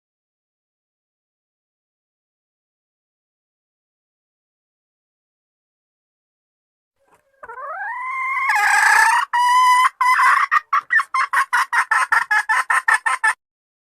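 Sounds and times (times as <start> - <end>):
hen calling and clucking: 7.0 - 13.4.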